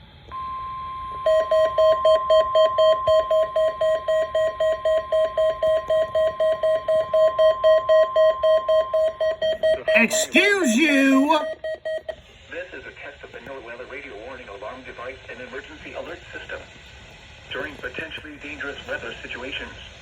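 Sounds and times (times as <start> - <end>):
steady warning alarm tone: 0.4 - 10.1
fast alarm beeping: 1.2 - 12.0.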